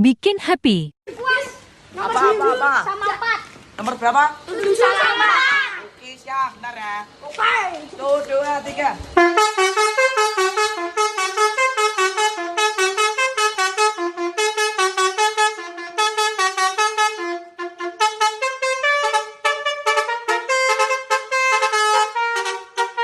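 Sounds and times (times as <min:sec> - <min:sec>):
multi-tone horn melody: 0:09.2 - 0:23.0.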